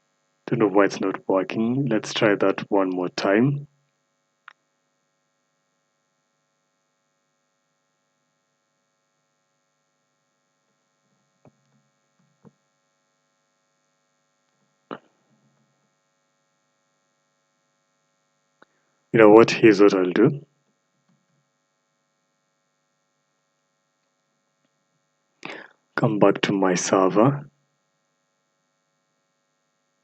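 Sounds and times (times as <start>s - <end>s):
faint electrical hum: 0.5s - 3.6s.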